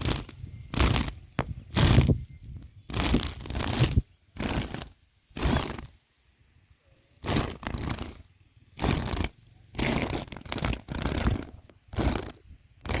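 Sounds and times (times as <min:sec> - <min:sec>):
rustling crinkling bursts: 0:02.9 - 0:06.0, 0:07.2 - 0:13.0.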